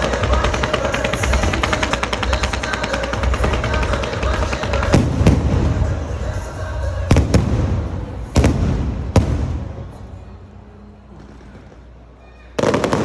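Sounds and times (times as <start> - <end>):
firework shells bursting: 0.0 - 6.0
firework crackling: 0.0 - 10.3, 11.1 - 13.0.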